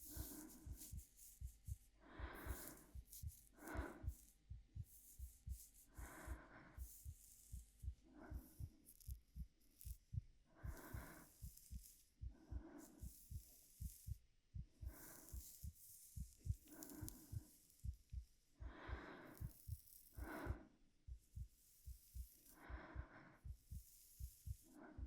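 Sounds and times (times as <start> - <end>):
heartbeat thumps: 0.0 - 25.0
soft breaths: 0.0 - 25.0.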